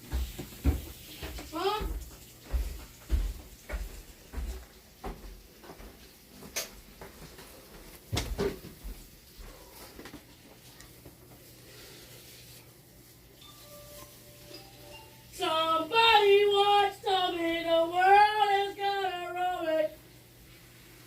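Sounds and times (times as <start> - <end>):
faint steady hum: 6.6 - 21.0.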